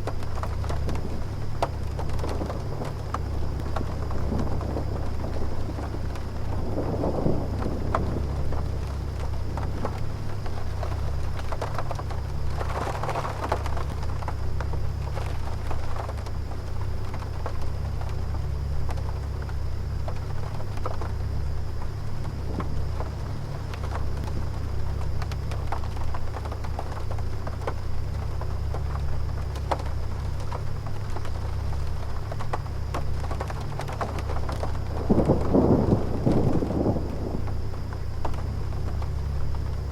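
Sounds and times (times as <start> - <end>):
air conditioner humming: 0.0 - 39.9
rain drops tapping: 0.0 - 39.9
distant thunder rumble: 0.1 - 39.9.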